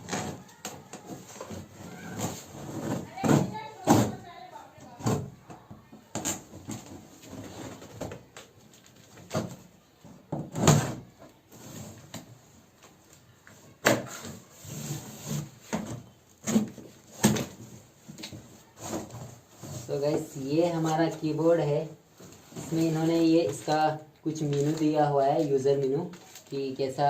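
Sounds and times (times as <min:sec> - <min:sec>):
packaging rustling: 0:24.4 - 0:26.6.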